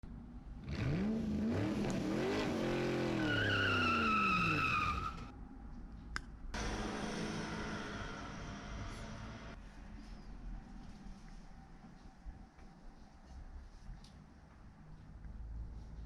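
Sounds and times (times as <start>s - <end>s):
vehicle engine revving: 0.6s - 3.6s, 6.6s - 9.6s
high squeal: 3.1s - 5.3s, 6.6s - 9.6s.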